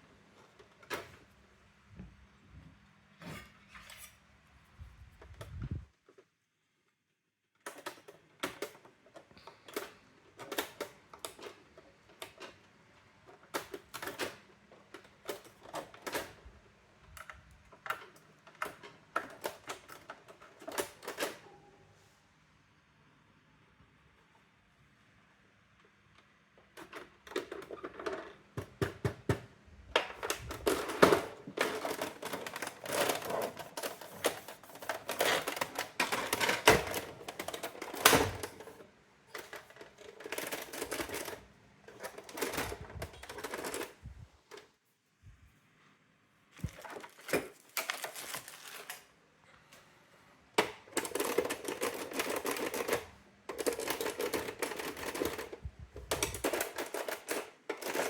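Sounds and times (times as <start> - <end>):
electronic typewriter typing: 50.9 - 55.5.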